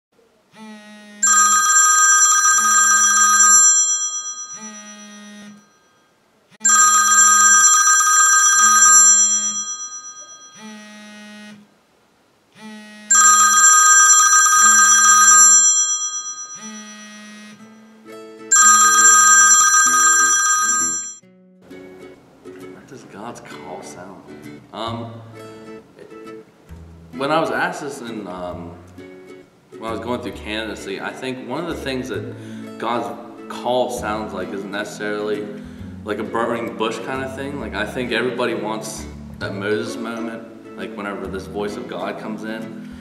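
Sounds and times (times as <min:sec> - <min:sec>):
telephone ringing: 0:01.2 - 0:11.0, 0:13.1 - 0:17.8, 0:18.5 - 0:21.2.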